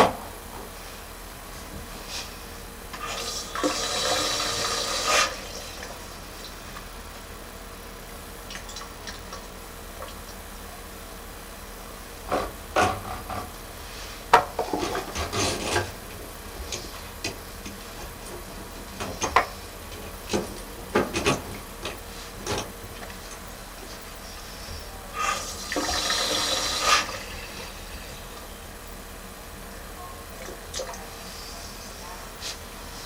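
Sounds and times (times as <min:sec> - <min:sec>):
water splashing in drain pipe: 0:25.6 - 0:27.2.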